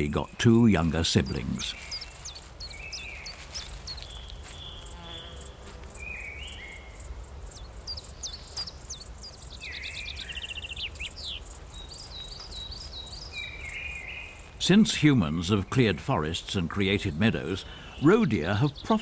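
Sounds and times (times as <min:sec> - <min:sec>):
grasshoppers chirping: 0:00.0 - 0:19.0
small birds chirping: 0:00.0 - 0:19.0
bird trill: 0:01.3 - 0:14.6.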